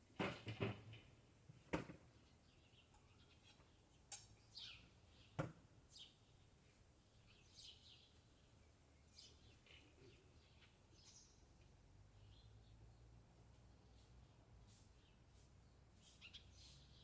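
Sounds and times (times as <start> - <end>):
small birds chirping: 16.0 - 17.0.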